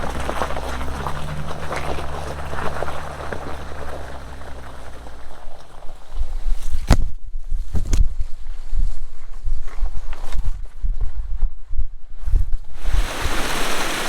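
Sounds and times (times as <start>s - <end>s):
crackling and ticking: 0.0s - 6.8s
low engine hum: 0.0s - 7.2s.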